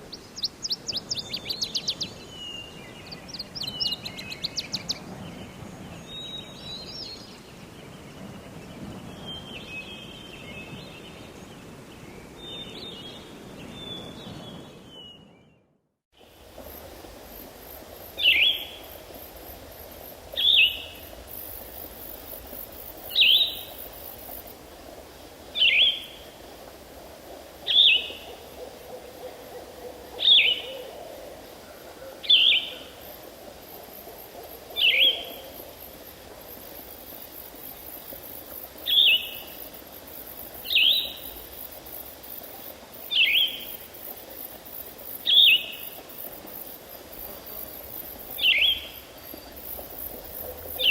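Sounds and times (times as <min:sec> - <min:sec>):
high insect trill: 0:32.2 - 0:50.9.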